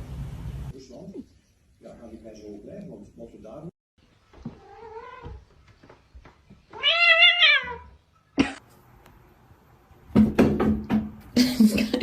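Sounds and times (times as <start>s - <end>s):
cat meowing: 4.6s - 5.4s, 6.7s - 8.0s.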